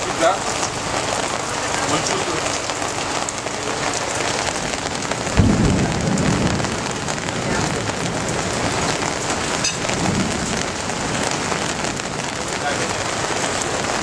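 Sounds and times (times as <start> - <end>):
steady rain: 0.0 - 14.0
rumbling thunderclap: 4.2 - 14.0.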